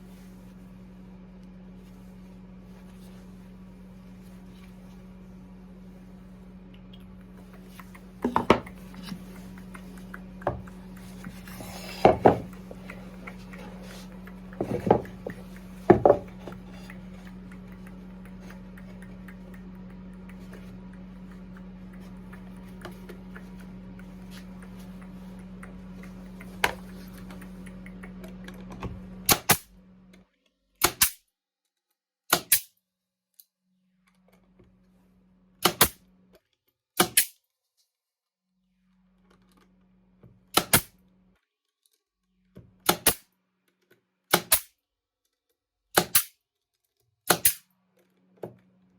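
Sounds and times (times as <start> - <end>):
low hum: 0.0 - 30.2
wooden parts clattering: 11.2 - 16.8.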